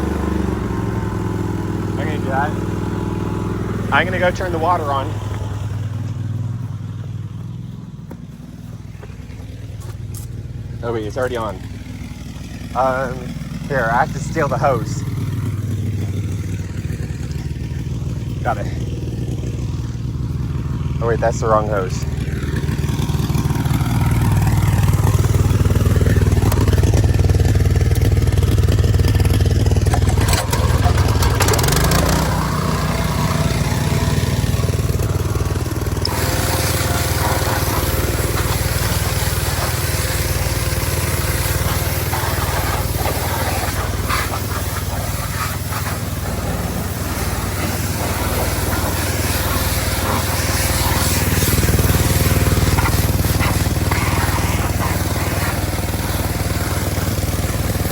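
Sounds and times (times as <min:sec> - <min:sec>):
small gasoline engine running: 0:00.0 - 0:57.9.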